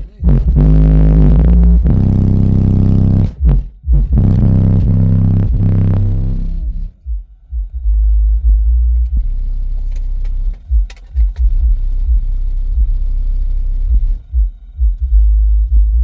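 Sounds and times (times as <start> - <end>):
deep bass through subwoofers: 0.0 - 16.0.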